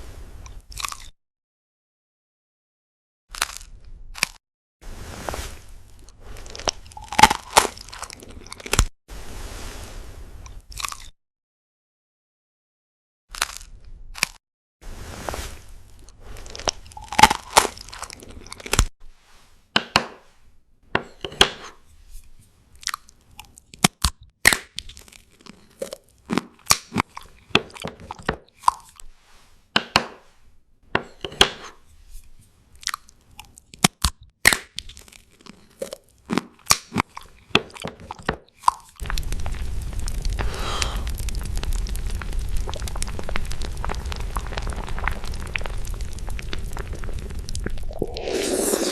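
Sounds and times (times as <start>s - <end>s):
crunching crisp food: 0.4s - 1.1s, 3.3s - 4.4s, 5.5s - 8.9s, 10.4s - 11.1s, 13.3s - 14.4s, 15.7s - 18.9s, 22.8s - 29.0s, 31.6s - 48.9s.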